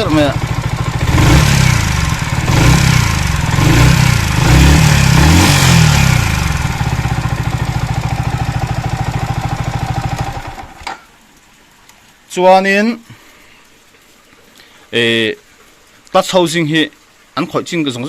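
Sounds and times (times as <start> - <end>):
motorcycle engine revving and idling: 0.0 - 10.9.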